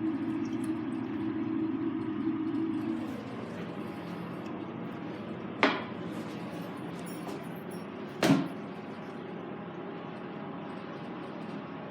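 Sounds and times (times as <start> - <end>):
toilet clunks: 8.2 - 8.6.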